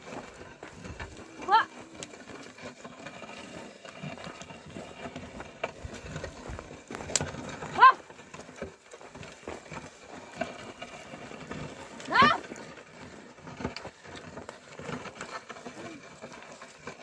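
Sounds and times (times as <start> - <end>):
person calling to oxen: 12.1 - 12.5.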